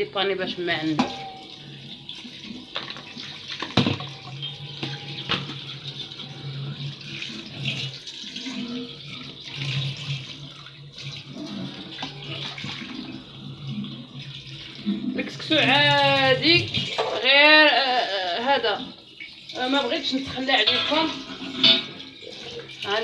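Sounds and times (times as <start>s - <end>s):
tap water running into sink: 0.0s - 23.0s
pot knocking against sink: 0.9s - 1.5s, 2.7s - 5.8s.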